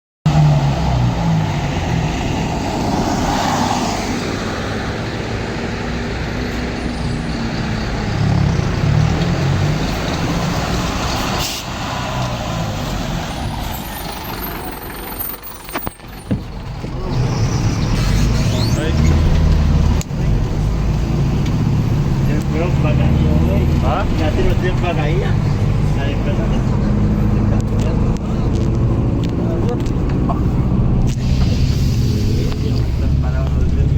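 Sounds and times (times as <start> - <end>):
bus diesel engine running: 4.0 - 33.9
air hiss: 31.1 - 32.8.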